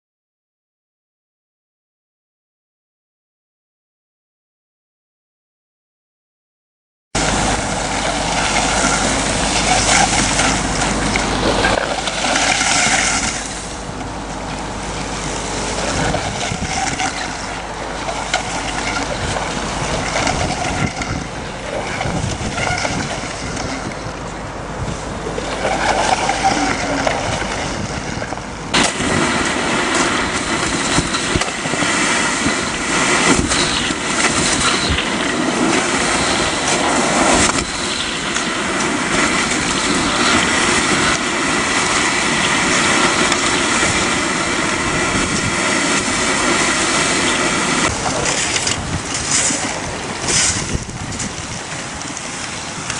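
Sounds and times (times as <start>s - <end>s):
suction hose rushing: 7.2s - 14.0s, 25.4s - 52.9s.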